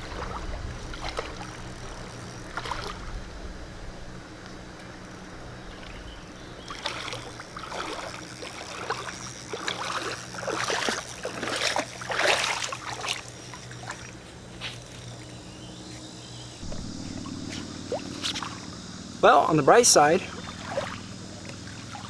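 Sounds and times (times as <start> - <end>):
person wading through shallow water: 0.0 - 4.4, 5.2 - 15.2, 16.6 - 22.0
steady low hum: 0.0 - 22.0.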